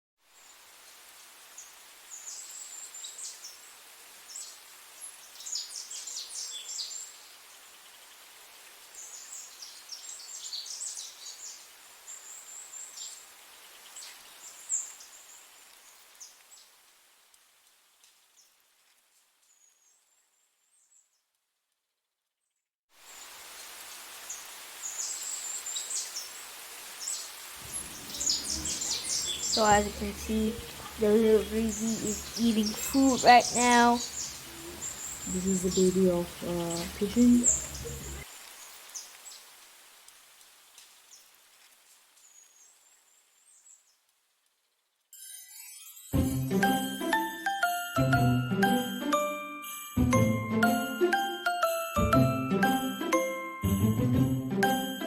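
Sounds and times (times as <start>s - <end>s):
faint background hiss: 0.2s - 21.5s, 23.0s - 46.1s
high-pitched bird chirping: 27.7s - 38.2s.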